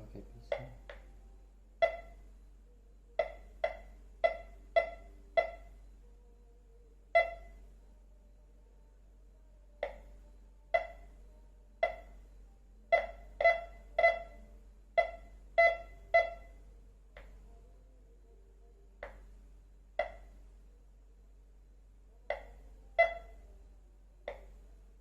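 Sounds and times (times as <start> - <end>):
metal detector beeps: 1.8 - 2.2, 3.2 - 5.8, 7.1 - 7.6, 10.7 - 11.2, 11.8 - 12.2, 12.9 - 16.6, 22.3 - 23.4.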